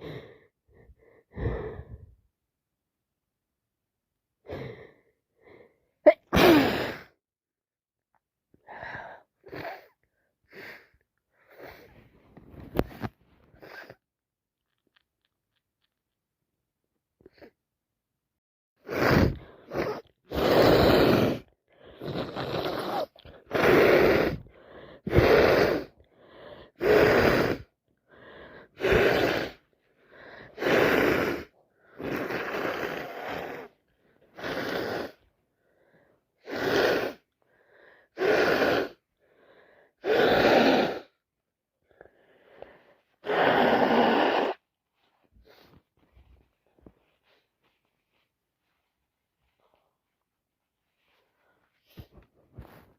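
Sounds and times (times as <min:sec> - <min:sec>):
wet nasal bursts: 0:18.8 - 0:24.4, 0:25.1 - 0:25.9, 0:26.8 - 0:27.7, 0:28.8 - 0:29.6, 0:30.6 - 0:33.8, 0:34.4 - 0:35.2, 0:36.4 - 0:37.2, 0:38.2 - 0:39.0, 0:40.0 - 0:41.1, 0:43.2 - 0:44.6.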